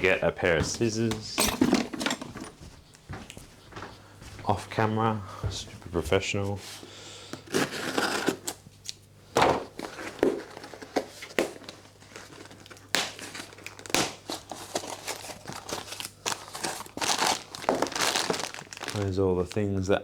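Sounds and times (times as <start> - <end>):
plastic packaging tearing: 7.4 - 8.6, 9.8 - 19.8
plastic packaging crinkling: 9.7 - 20.0.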